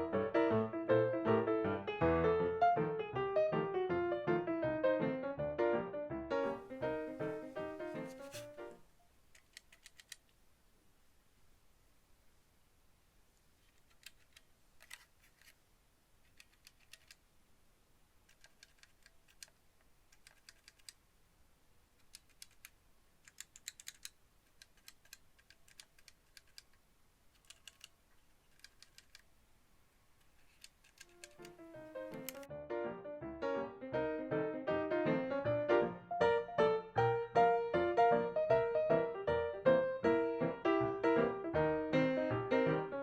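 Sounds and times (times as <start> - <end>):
music: 0.0 - 8.8, 31.4 - 43.0
keycaps clicking off keyboard: 6.7 - 10.3, 13.7 - 15.6, 16.2 - 17.2, 18.3 - 21.0, 22.0 - 29.3, 30.2 - 32.5.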